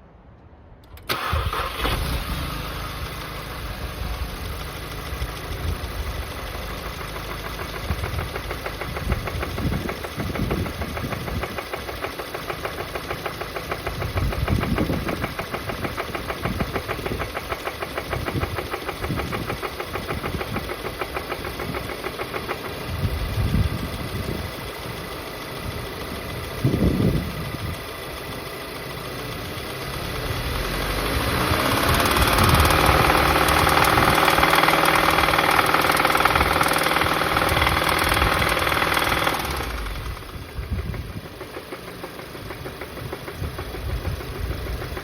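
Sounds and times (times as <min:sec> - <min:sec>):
car engine starting: 0:00.8 - 0:45.0
engine rapid metallic knock: 0:04.8 - 0:24.3, 0:31.5 - 0:45.0.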